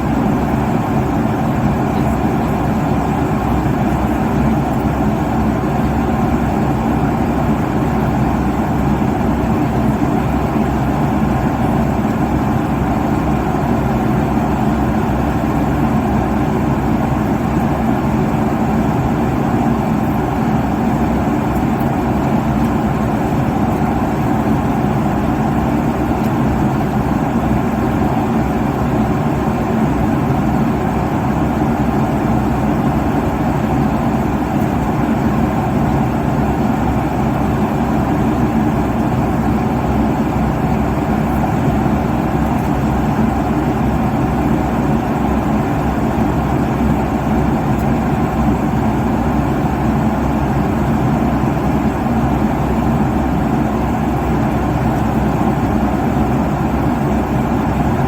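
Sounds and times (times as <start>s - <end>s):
jet cabin engine roar: 0.0s - 58.0s.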